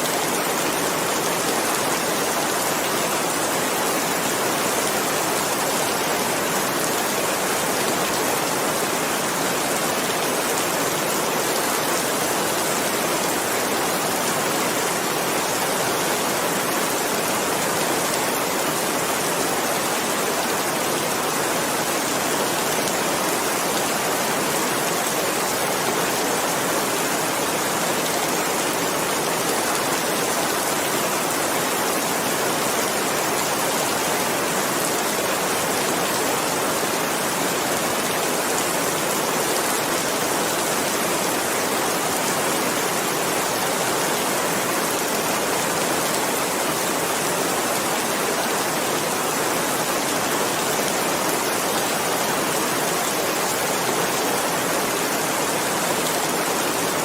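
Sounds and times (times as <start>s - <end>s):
steady rain: 0.0s - 57.0s.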